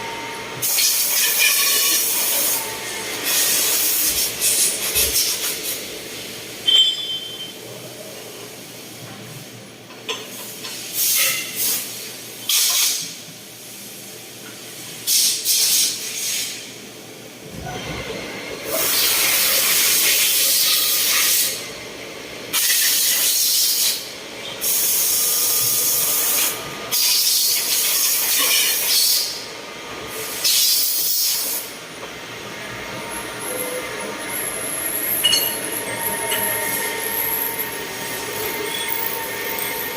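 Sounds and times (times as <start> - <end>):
machine hissing bursts: 0.0 - 6.4, 18.6 - 21.6, 22.5 - 39.9.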